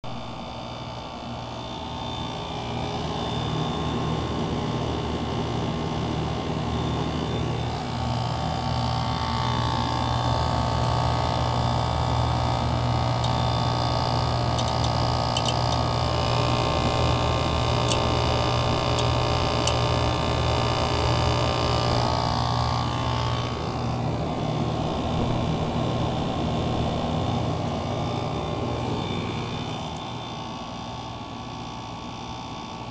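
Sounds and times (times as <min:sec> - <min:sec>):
compressor hum with fan noise: 0:00.0 - 0:32.9
high whine: 0:00.0 - 0:32.9.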